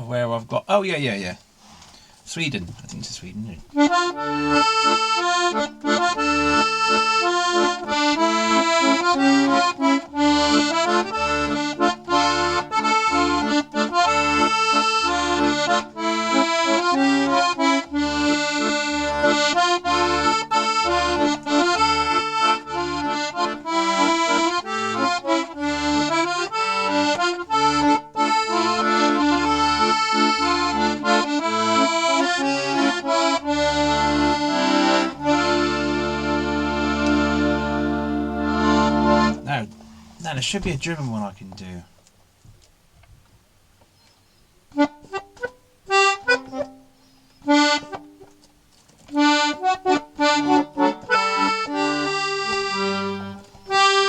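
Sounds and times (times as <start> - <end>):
accordion playing folk tune: 1.6 - 42.1, 44.6 - 54.0.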